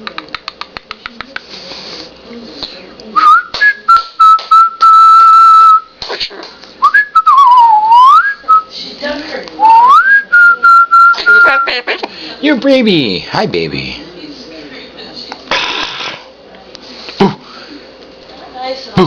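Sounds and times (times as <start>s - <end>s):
pure-toned whistling: 3.2s - 5.9s, 6.8s - 8.7s, 9.6s - 11.7s.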